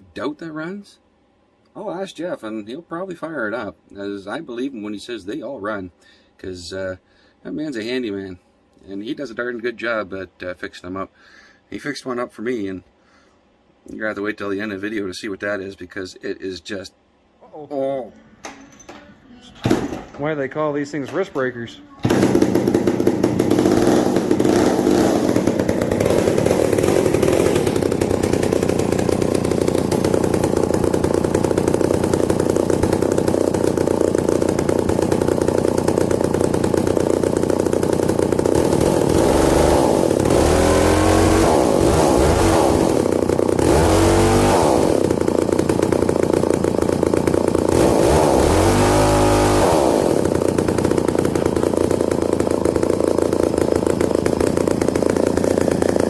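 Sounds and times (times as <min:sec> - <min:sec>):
chainsaw idling and revving: 0:22.0 - 0:56.0.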